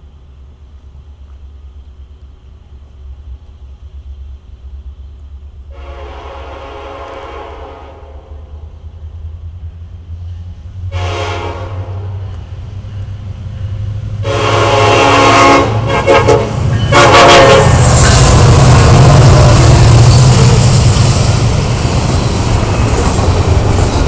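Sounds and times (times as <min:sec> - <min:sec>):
diesel locomotive rumble: 0:00.0 - 0:24.0
rush of passing train: 0:00.0 - 0:24.0
locomotive air horn blasts: 0:05.7 - 0:08.5, 0:10.9 - 0:12.2, 0:14.2 - 0:18.1.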